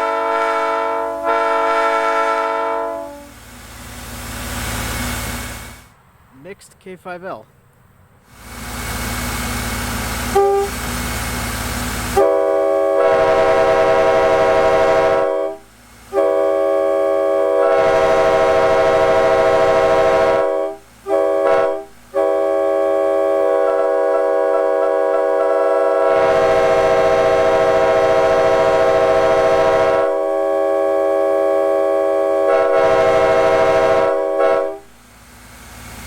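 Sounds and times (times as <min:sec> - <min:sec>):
train air horn chord: 0:00.0 - 0:03.4, 0:10.2 - 0:10.9, 0:12.0 - 0:35.0.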